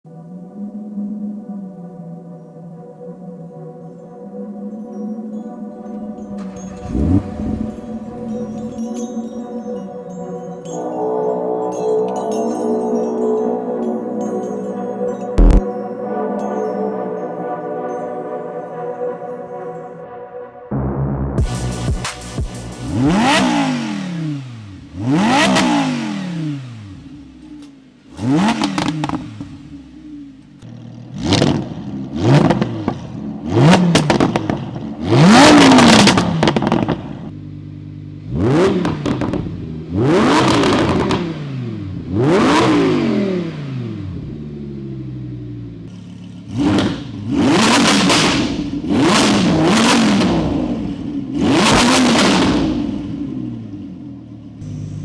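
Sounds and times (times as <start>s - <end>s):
car engine revving: 5.9s - 9.4s, 15.4s - 15.6s, 21.4s - 55.0s
exhaust crackle: 6.0s - 9.2s, 15.4s - 15.6s, 21.4s - 42.8s.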